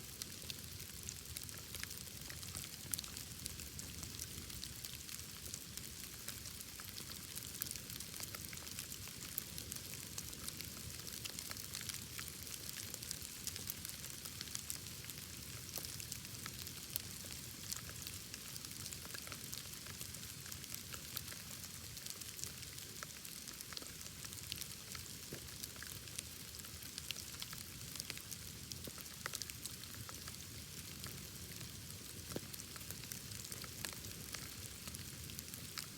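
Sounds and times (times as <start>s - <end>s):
bonfire crackling and popping: 0.1s - 35.9s.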